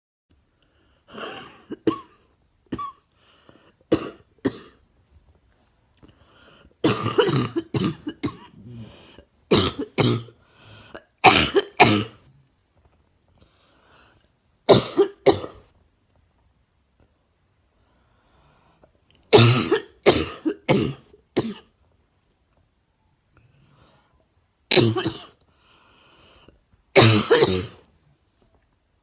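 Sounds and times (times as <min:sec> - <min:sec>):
person coughing: 0:01.1 - 0:03.1, 0:03.9 - 0:04.8, 0:06.8 - 0:08.9, 0:09.5 - 0:10.4, 0:11.2 - 0:12.2, 0:14.7 - 0:15.6, 0:19.3 - 0:21.7, 0:24.7 - 0:25.4, 0:27.0 - 0:27.8.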